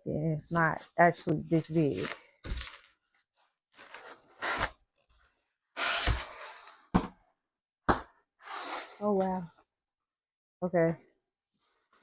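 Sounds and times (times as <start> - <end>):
cardboard packaging rustling: 1.6 - 5.2.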